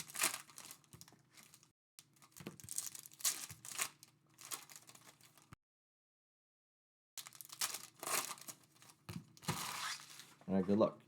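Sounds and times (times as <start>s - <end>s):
card pack wrappers crinkling: 0.0s - 5.5s, 7.2s - 10.1s.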